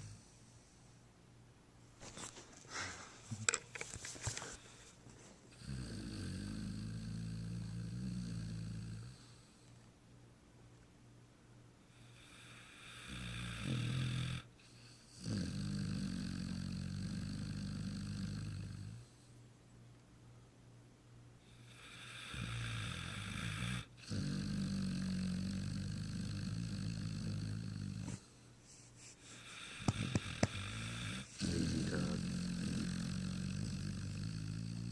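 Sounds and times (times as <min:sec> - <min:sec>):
dog snoring loudly: 0:05.6 - 0:09.5, 0:12.0 - 0:19.2, 0:21.5 - 0:28.3, 0:29.3 - 0:34.9.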